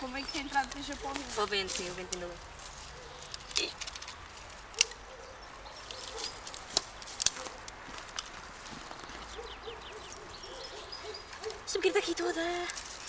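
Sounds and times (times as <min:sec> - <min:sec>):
sticks knocking and snapping: 0:00.0 - 0:02.4, 0:03.1 - 0:05.0, 0:05.8 - 0:09.3.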